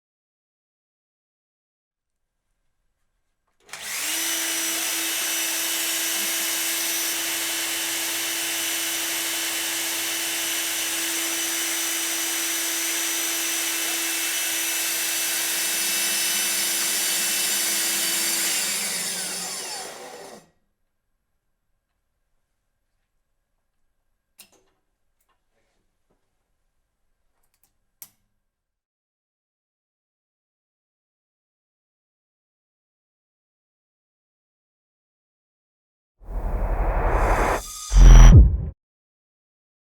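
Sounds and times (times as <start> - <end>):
core drill motor running: 3.8 - 5.6, 18.3 - 20.4
drill spinning down whine: 3.8 - 5.6, 15.7 - 20.4.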